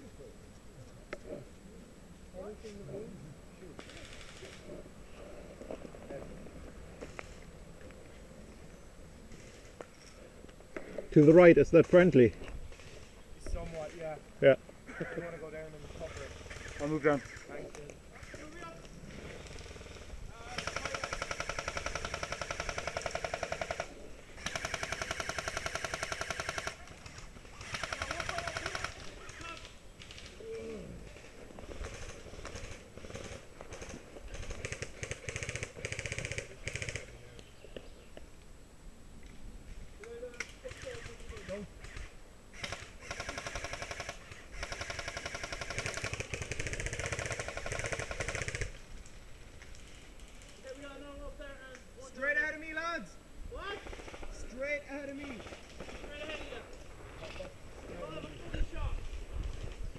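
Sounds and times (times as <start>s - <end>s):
airsoft rifle firing bursts: 16.2s - 17.4s, 19.4s - 30.2s, 31.6s - 37.1s, 40.6s - 48.8s.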